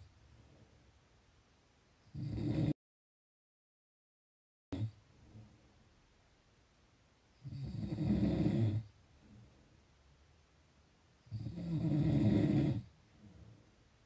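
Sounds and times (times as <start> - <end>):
person snoring: 2.1 - 2.8, 7.4 - 8.9, 11.3 - 12.9
faint breath: 13.0 - 14.0.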